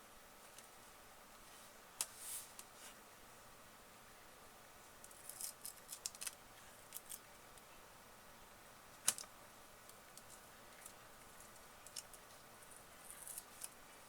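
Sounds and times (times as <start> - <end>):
small tools clicking and scraping: 5.0 - 7.2, 10.2 - 13.8.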